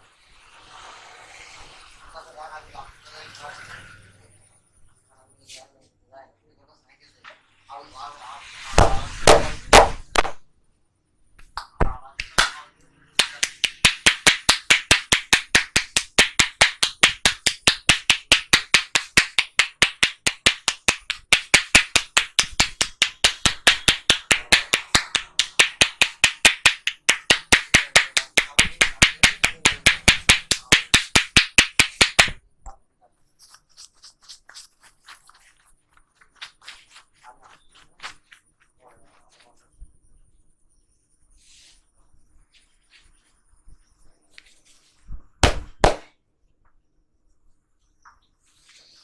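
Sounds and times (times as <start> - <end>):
hands slapping in massage: 8.7 - 10.4, 11.4 - 12.6, 13.2 - 32.4, 45.4 - 46.1.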